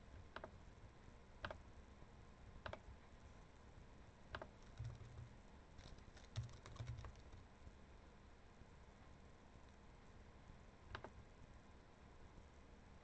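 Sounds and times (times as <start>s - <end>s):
computer keys clicking: 4.4s - 7.4s.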